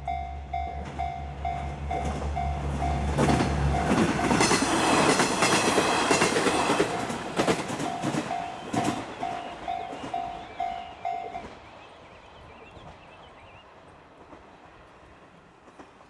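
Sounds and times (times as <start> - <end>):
rushing train wheel noise: 0.0 - 13.1
wheel clacks over rail joints: 1.9 - 10.3.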